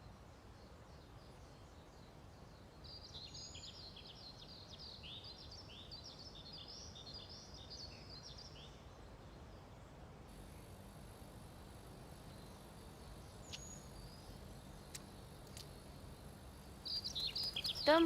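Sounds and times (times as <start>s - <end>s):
faint low background hiss: 0.0s - 18.0s
small bird twittering: 10.3s - 18.0s.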